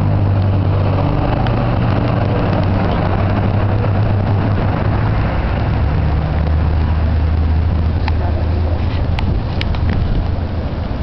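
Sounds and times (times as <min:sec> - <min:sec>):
jet airliner rushing noise: 0:00.0 - 0:11.0
low hum: 0:00.0 - 0:11.0.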